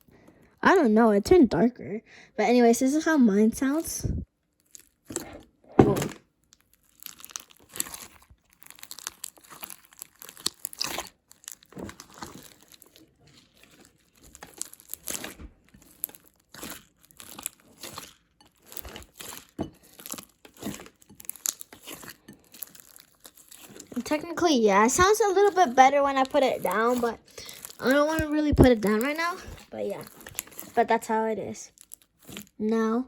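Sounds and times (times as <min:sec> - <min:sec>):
slime crackling and popping: 0:04.6 - 0:32.6.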